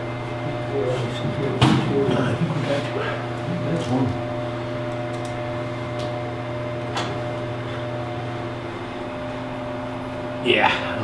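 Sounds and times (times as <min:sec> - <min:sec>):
electrical hum: 0:00.0 - 0:11.0.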